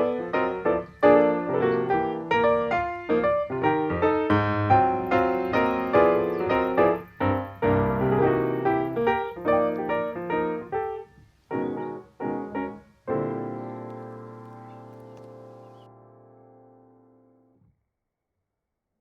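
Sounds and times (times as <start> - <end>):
piano notes and chords: 0.0 - 17.6.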